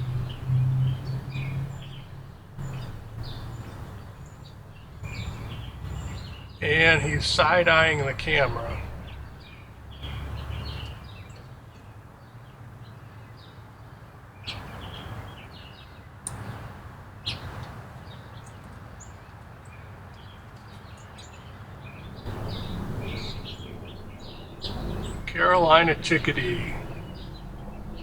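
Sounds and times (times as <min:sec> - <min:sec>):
songbirds chirping: 0:00.0 - 0:13.9, 0:17.3 - 0:28.0
low background rumble: 0:22.3 - 0:28.0.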